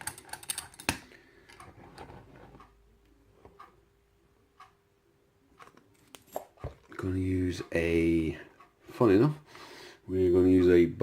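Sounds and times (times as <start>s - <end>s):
lock-picking tools clicking: 0.0s - 1.6s.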